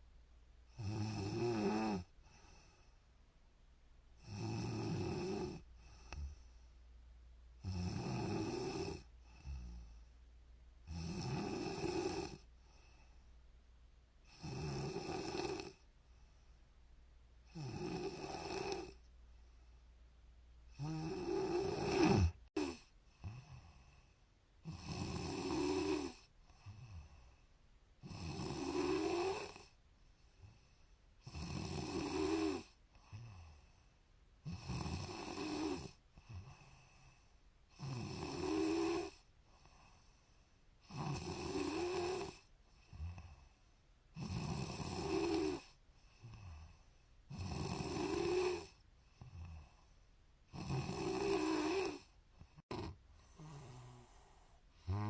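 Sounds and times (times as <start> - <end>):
woman snoring: 0.7 - 2.9, 4.2 - 6.5, 7.6 - 10.0, 10.9 - 12.8, 14.3 - 15.9, 17.5 - 19.0, 20.7 - 27.4, 28.0 - 29.8, 30.4 - 33.8, 34.4 - 40.2, 40.8 - 43.6, 44.2 - 49.9, 50.5 - 55.0.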